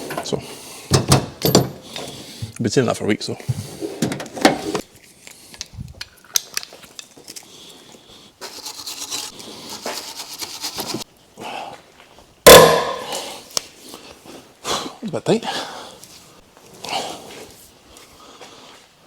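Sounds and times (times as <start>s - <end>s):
hand tools scraping metal: 8.4s - 11.0s.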